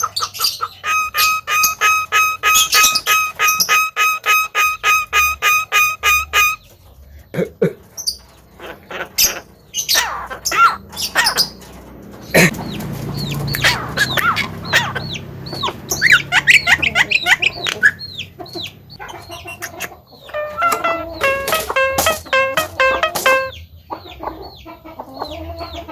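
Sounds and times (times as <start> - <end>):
myna calling: 0.0 - 6.7, 12.3 - 23.6.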